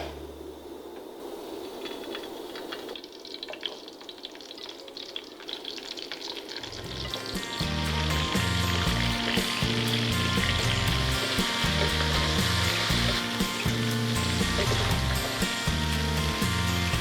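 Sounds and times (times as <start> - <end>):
vegetables sizzling in oil: 1.7 - 17.0
background music with bass: 6.9 - 17.0.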